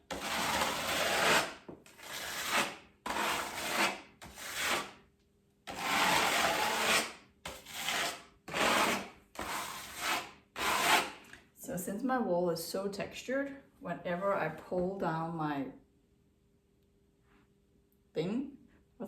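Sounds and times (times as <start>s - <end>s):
filling knife scraping on wall: 0.0s - 5.0s, 5.7s - 11.2s.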